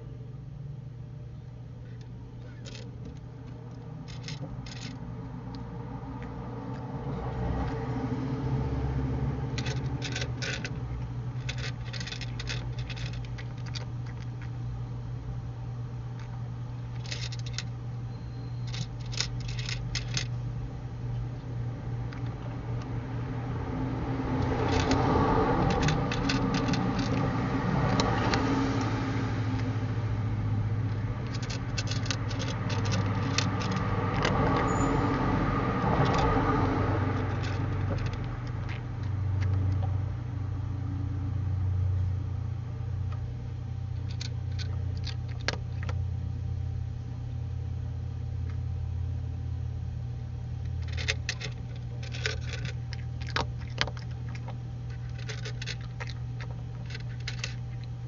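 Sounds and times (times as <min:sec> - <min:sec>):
steady low hum: 0:00.0 - 0:58.0
cat crunching dry kibble: 0:02.5 - 0:04.9, 0:09.5 - 0:14.7, 0:16.1 - 0:17.8, 0:18.6 - 0:20.3, 0:24.3 - 0:29.0, 0:30.8 - 0:34.7, 0:35.8 - 0:39.8, 0:44.0 - 0:46.1, 0:50.7 - 0:58.0.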